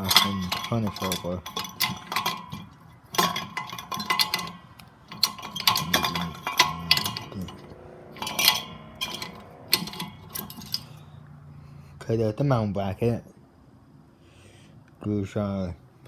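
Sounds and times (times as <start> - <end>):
metal fan housing clanking: 0.0 - 11.1.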